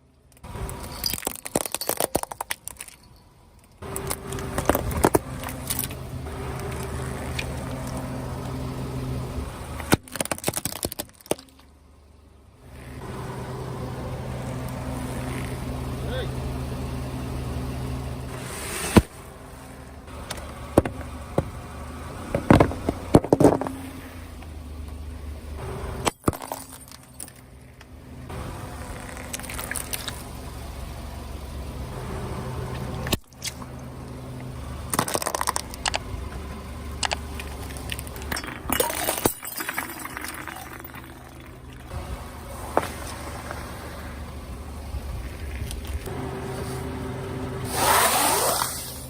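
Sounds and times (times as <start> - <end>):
car engine running slowly: 0.0 - 49.0
tyres crushing brittle objects: 0.7 - 3.0, 9.8 - 11.6, 26.1 - 27.4, 34.9 - 36.1.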